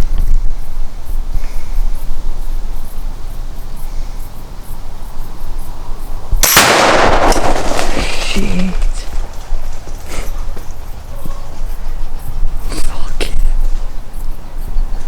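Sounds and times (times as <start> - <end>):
wind rumbling on microphone: 0.0 - 15.0
loud rushing blast: 6.4 - 9.6
explosion bang: 6.4 - 9.7.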